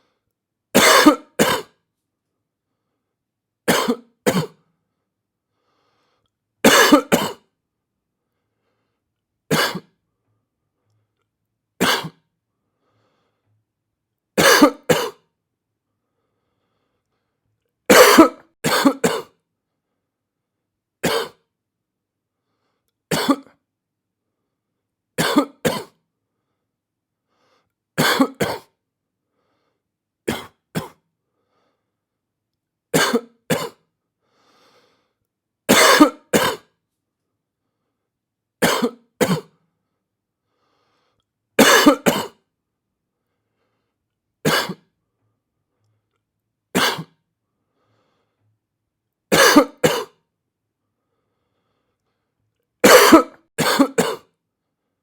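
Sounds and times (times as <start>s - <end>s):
person coughing: 0.8s - 1.8s, 3.7s - 4.6s, 6.7s - 7.5s, 9.5s - 9.9s, 11.8s - 12.2s, 14.4s - 15.2s, 17.9s - 19.4s, 21.0s - 21.4s, 23.1s - 23.6s, 25.2s - 26.0s, 28.0s - 28.7s, 30.3s - 31.0s, 33.0s - 33.8s, 35.7s - 36.7s, 38.6s - 39.6s, 41.6s - 42.4s, 44.5s - 44.9s, 46.8s - 47.2s, 49.3s - 50.2s, 52.8s - 54.3s.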